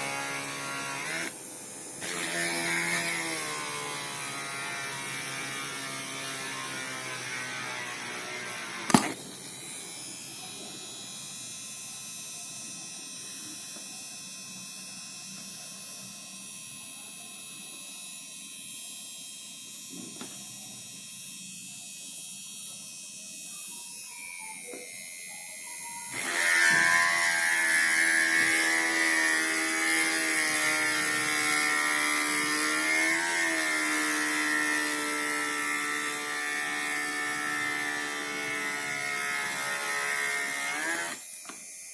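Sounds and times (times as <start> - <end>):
small motor whining: 19.6 - 41.9.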